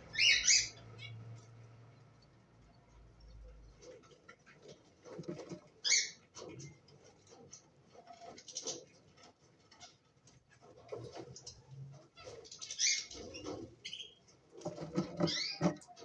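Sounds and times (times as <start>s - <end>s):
cockatiels chirping: 0.1s - 1.2s, 5.8s - 6.6s, 10.6s - 16.0s
light clicks and rustling: 1.3s - 16.0s.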